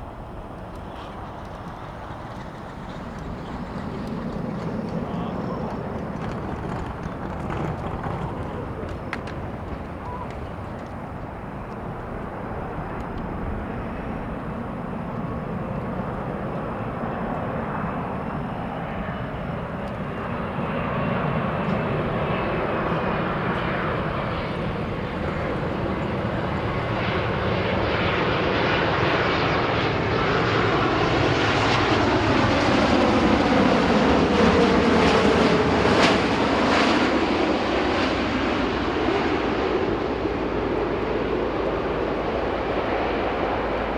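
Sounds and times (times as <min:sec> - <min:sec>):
jet engines roaring: 0:00.0 - 0:43.9
engine whine sliding down: 0:00.6 - 0:11.2.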